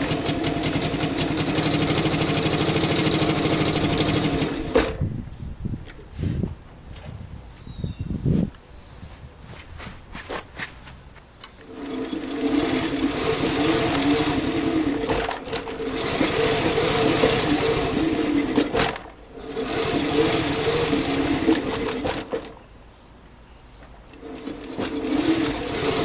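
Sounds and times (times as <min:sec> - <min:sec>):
small motorcycle engine buzzing: 0:00.0 - 0:05.0, 0:11.5 - 0:22.6, 0:24.1 - 0:26.0.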